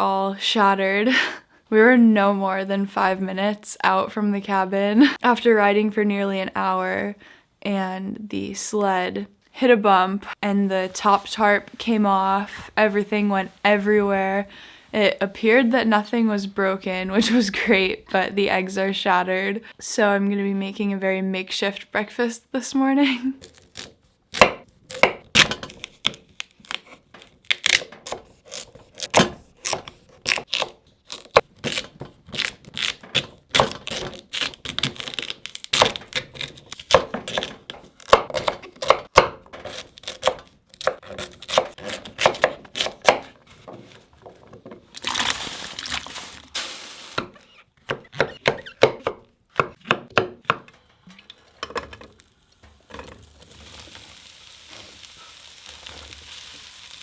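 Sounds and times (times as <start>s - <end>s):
knife chopping on cutting board: 24.4s - 26.2s, 35.8s - 43.4s, 47.2s - 50.7s
food sizzling in a pan: 52.1s - 57.0s.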